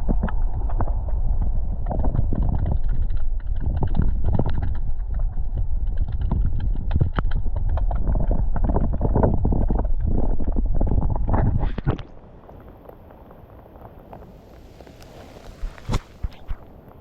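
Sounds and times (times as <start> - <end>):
rustling: 11.0 - 17.0
footsteps: 14.1 - 16.8.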